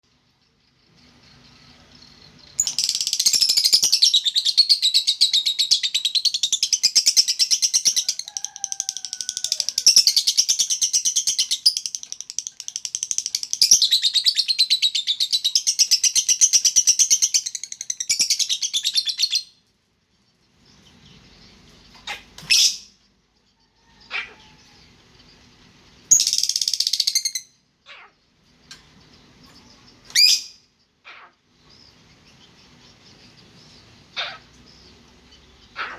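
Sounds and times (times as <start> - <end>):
lovebird chattering: 2.5 - 19.5, 23.9 - 25.5, 26.1 - 35.9.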